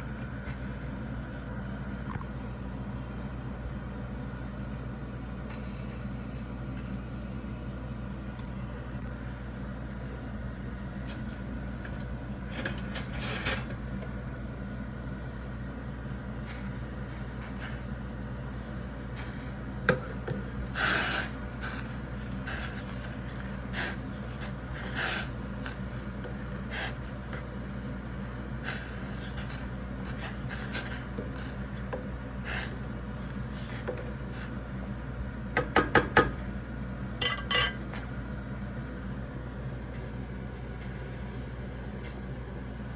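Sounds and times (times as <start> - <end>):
steady low hum: 0.0 - 42.9
metal cookware clinking: 37.2 - 37.8.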